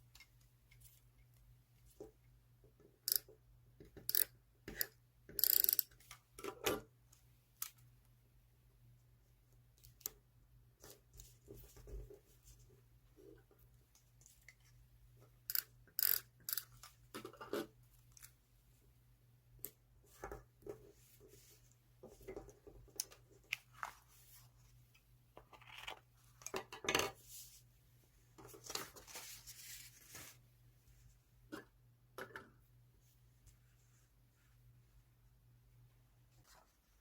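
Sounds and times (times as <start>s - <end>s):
paper crinkling and rustling: 28.5s - 30.4s.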